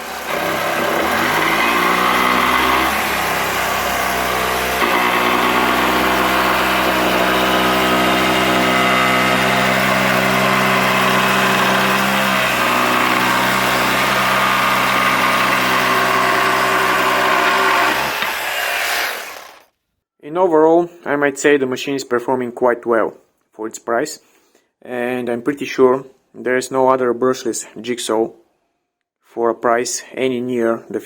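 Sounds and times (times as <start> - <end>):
jigsaw motor running: 0.0 - 19.7.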